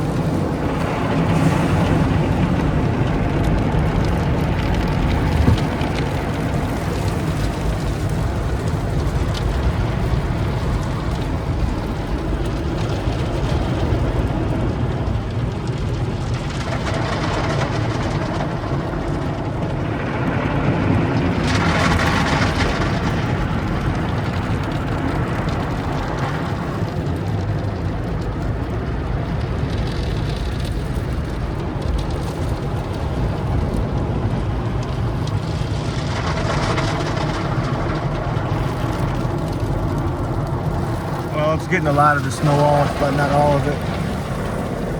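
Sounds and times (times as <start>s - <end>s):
car engine running: 4.8s - 6.6s.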